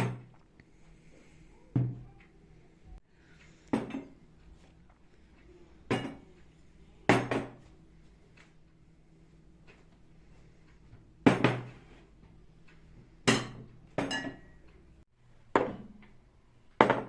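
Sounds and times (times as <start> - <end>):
hard objects knocking with ring: 16.8 - 17.0.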